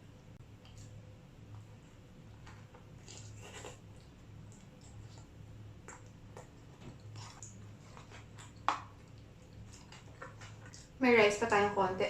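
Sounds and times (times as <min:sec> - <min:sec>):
low steady hum: 0:00.0 - 0:12.0
faint chewing: 0:00.6 - 0:11.0.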